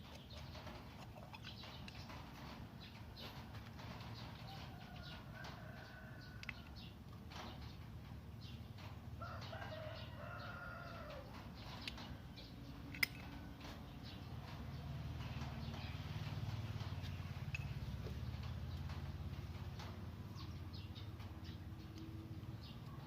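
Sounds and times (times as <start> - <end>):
rooster crowing: 9.2 - 11.3.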